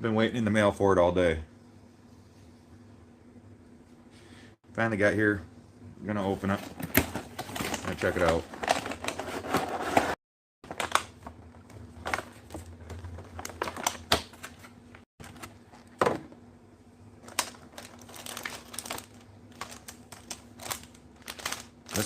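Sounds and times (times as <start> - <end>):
packaging being handled: 6.6 - 15.9, 17.2 - 22.0.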